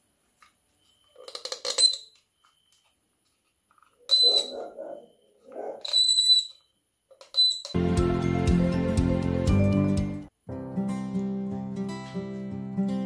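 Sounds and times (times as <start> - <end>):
hard parts clinking with metallic ringing: 1.1 - 2.2.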